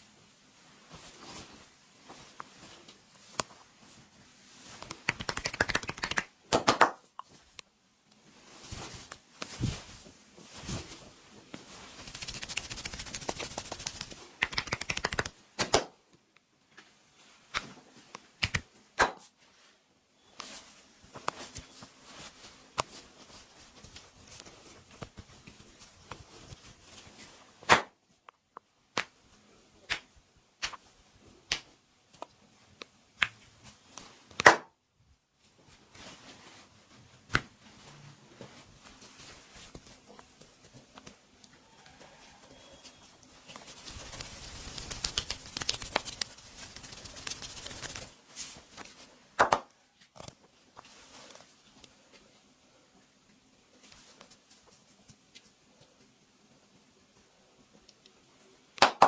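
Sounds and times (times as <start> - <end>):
hands rubbing on skin: 4.7 - 6.3, 11.7 - 15.4, 43.4 - 48.9.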